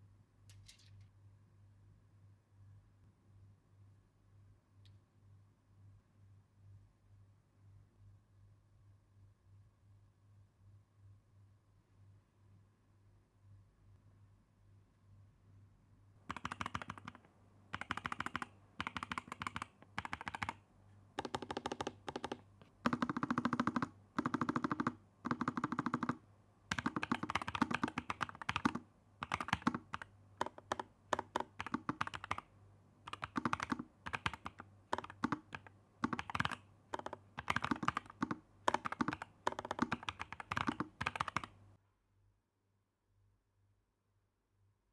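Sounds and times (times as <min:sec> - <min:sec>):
mechanical keyboard key clacks: 0:33.1 - 0:41.5.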